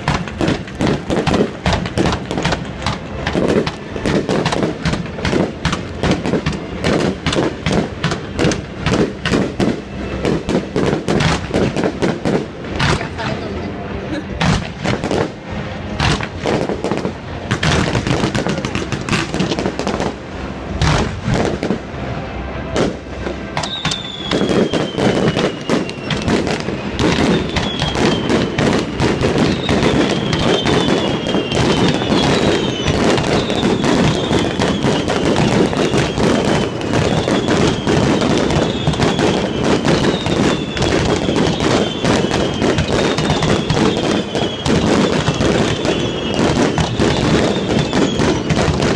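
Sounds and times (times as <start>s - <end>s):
firework bangs and booms: 0.0s - 48.9s
firework crackling barrage: 0.0s - 48.9s
falling firework whistles: 22.8s - 48.9s.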